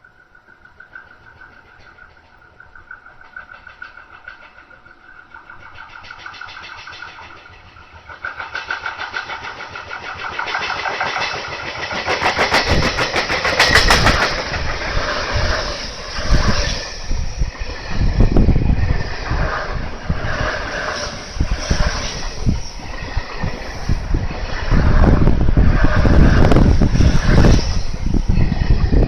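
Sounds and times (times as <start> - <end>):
train running rumble: 0.0 - 29.0
train wheels banging rhythmically: 0.1 - 15.2.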